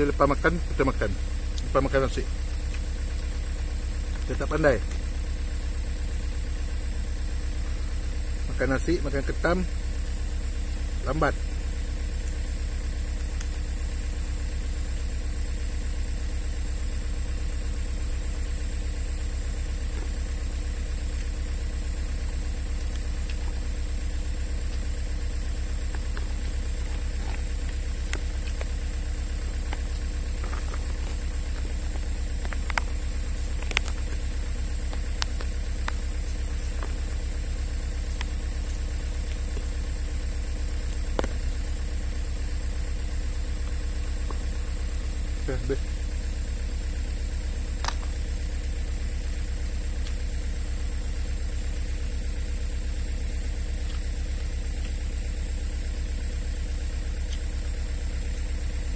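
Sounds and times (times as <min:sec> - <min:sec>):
engine idling: 0:00.0 - 0:58.9.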